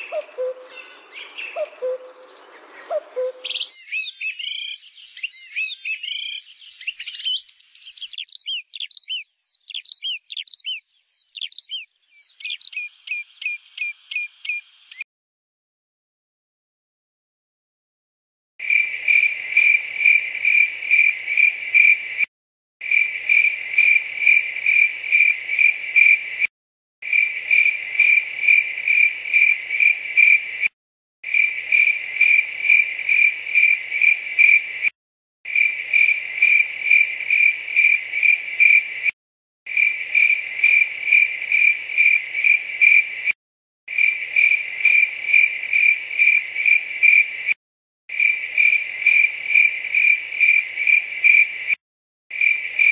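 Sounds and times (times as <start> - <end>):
cricket chirping: 0.1 - 0.8, 18.6 - 22.2, 22.8 - 26.4, 27.1 - 30.7, 31.3 - 34.9, 35.5 - 39.1, 39.7 - 47.5, 48.1 - 51.8, 52.4 - 52.9.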